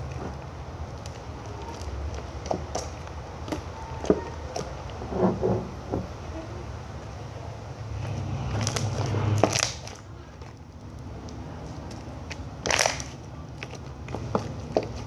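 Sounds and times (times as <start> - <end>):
slime squished by hand: 11.3 - 15.0
slime popping: 12.3 - 14.9.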